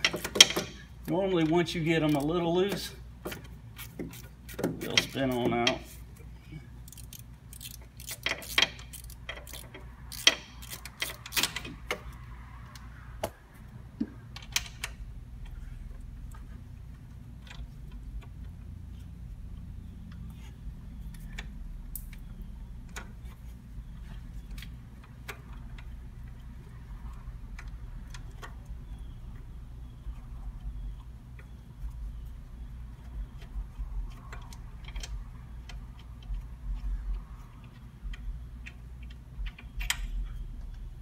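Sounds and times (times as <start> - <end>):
low steady hum: 0.0 - 41.0
hand ratchet clicking: 6.8 - 12.1
sharp metallic clicks: 6.8 - 13.4, 20.9 - 41.0.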